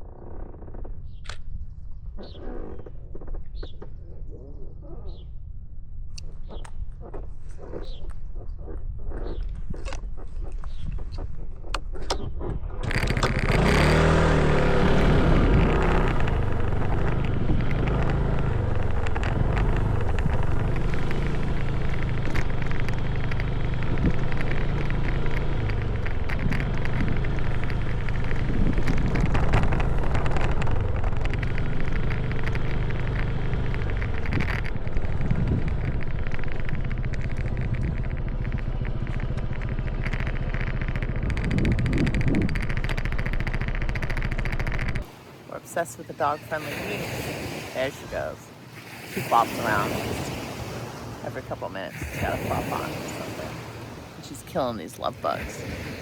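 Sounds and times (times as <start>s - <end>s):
motorcycle engine pulling away: 12.1s - 45.4s.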